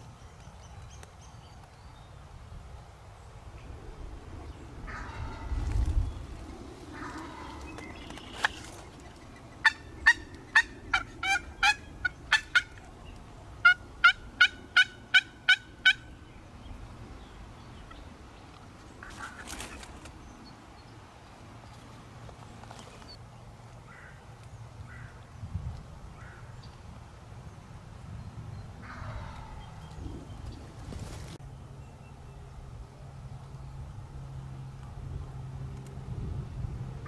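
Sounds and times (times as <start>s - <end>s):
turkey yelps: 9.6s - 12.9s, 13.6s - 16.1s.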